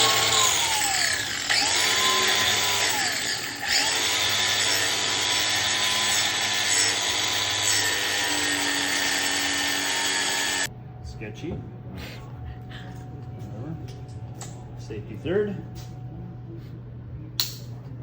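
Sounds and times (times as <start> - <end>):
angle grinder grinding metal: 0.0 - 10.7.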